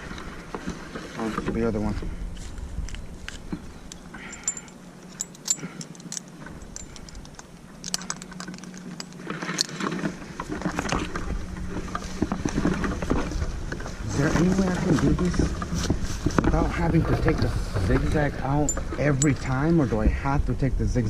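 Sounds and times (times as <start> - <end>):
rustling: 0.0 - 19.6
faint steady hum: 0.0 - 21.0
carabiners clinking: 2.3 - 14.2, 17.9 - 19.7.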